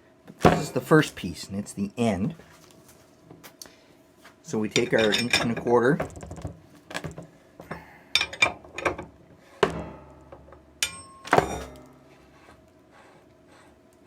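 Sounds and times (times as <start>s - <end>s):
wrench clinking on metal: 4.8s - 5.7s, 10.8s - 11.9s.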